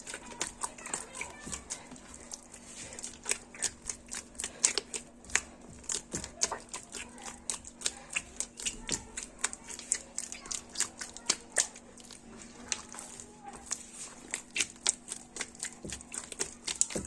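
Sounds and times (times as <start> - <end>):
hands kneading wet dough: 0.0 - 17.0.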